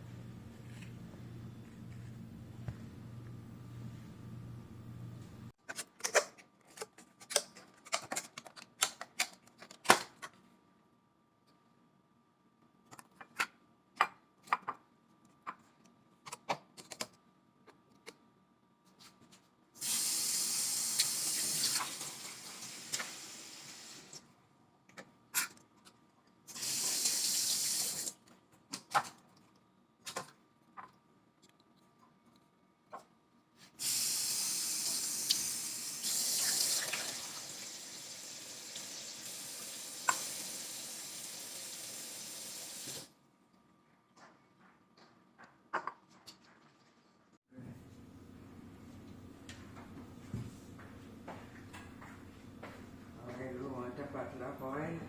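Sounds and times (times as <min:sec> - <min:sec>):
water running into a sink: 0:19.8 - 0:24.2, 0:33.8 - 0:43.1.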